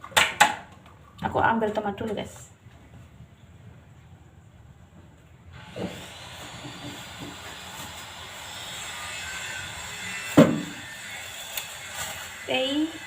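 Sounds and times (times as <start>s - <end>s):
loud knock: 10.4s - 10.7s.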